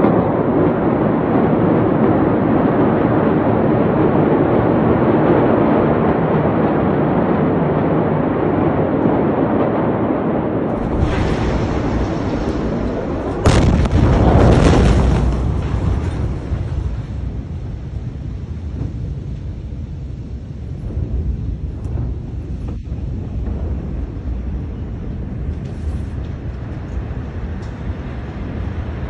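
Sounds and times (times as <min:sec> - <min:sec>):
loud explosion blast: 0:00.0 - 0:25.6
steady rushing noise: 0:00.0 - 0:29.0.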